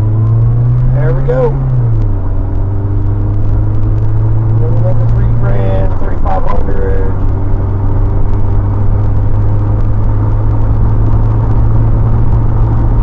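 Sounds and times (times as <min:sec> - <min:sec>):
car engine running: 0:00.0 - 0:13.0
tyre and road noise: 0:00.0 - 0:13.0.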